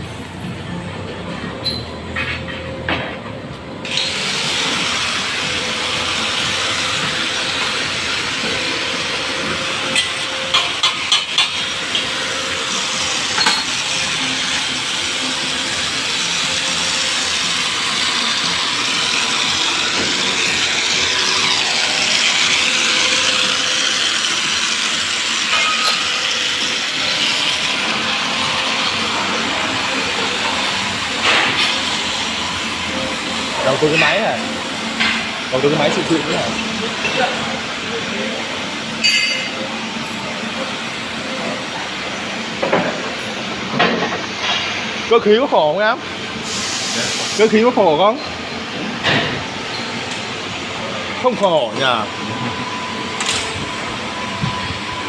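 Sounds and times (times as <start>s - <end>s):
machine cutting metal: 0.0s - 55.0s.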